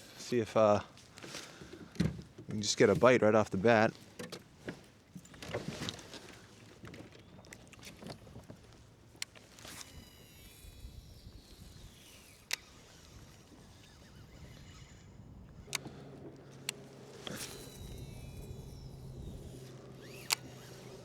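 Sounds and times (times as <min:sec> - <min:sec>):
low wind rumble: 0:13.2 - 0:21.0.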